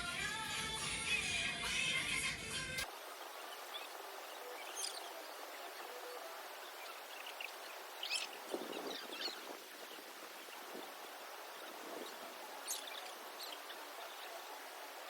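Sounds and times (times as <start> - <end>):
background music: 0.0 - 2.9
soft outdoor hiss: 0.0 - 15.0
bird chirps: 3.4 - 14.5.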